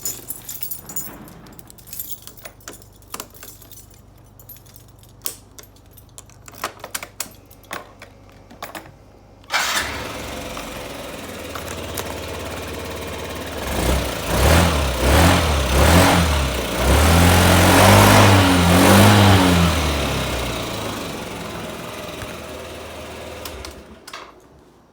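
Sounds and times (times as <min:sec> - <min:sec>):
scooter engine revving: 0:09.5 - 0:24.1.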